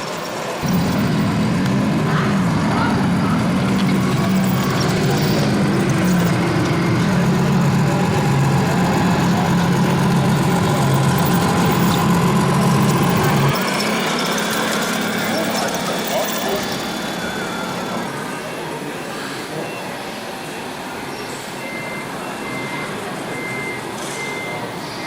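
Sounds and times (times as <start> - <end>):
model truck engine running: 0.0 - 19.5.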